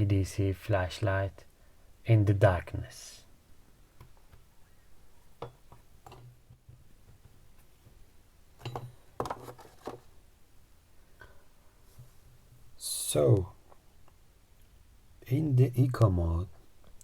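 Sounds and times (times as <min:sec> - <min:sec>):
faint low hum: 0:00.0 - 0:17.0
handling noises: 0:05.4 - 0:10.2.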